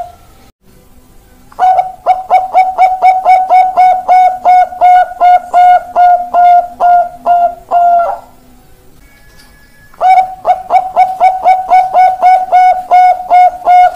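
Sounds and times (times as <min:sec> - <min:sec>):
dove cooing: 0:01.6 - 0:08.4, 0:10.0 - 0:13.9.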